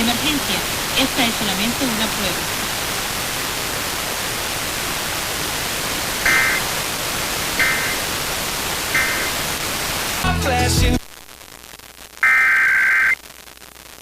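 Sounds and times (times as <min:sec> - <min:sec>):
static hiss: 0:00.0 - 0:14.0
digital data tone bursts: 0:06.2 - 0:06.7, 0:07.6 - 0:08.1, 0:08.9 - 0:09.4, 0:12.2 - 0:13.2.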